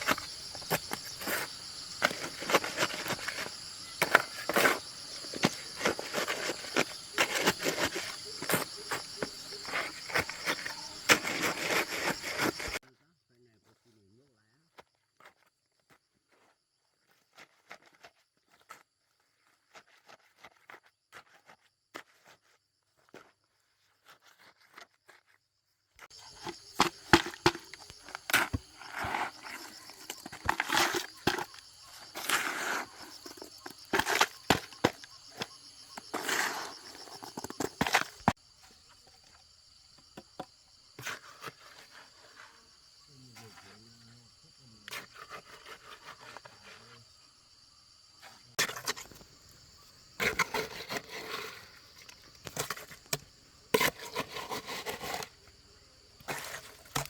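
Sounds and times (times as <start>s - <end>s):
high insect drone: 0.0s - 12.8s, 26.1s - 57.0s.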